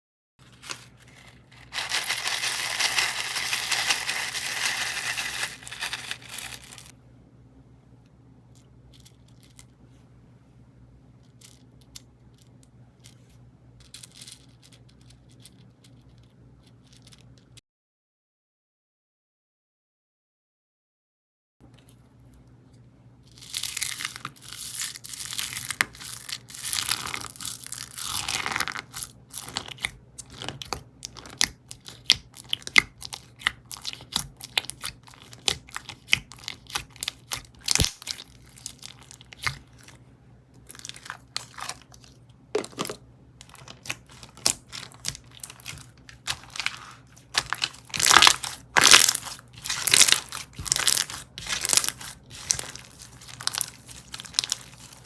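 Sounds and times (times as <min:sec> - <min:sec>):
slime squished by hand crackling: 0:43.5 - 0:54.9.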